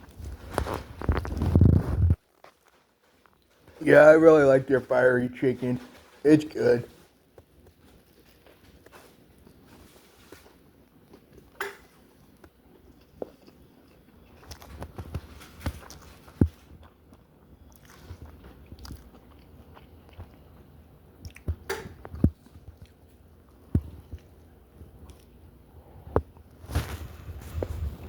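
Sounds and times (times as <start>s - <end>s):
person chewing food: 7.2s - 26.6s.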